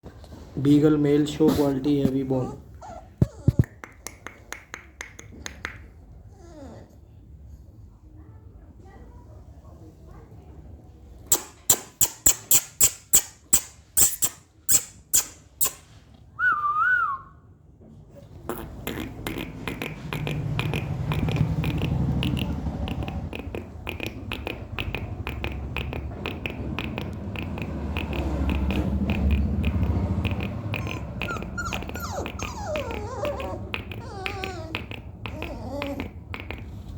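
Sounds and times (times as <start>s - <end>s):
puppy whining and yelping: 2.3s - 3.9s, 6.2s - 7.0s, 11.3s - 15.8s, 30.2s - 36.7s
wavering whistle: 16.4s - 17.4s.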